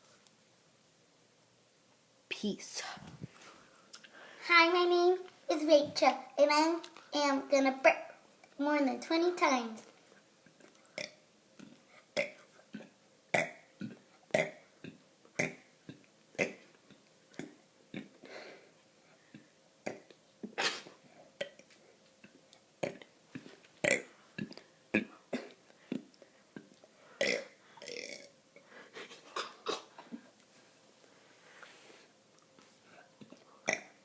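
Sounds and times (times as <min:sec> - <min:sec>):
girl burping: 0:27.2 - 0:28.3.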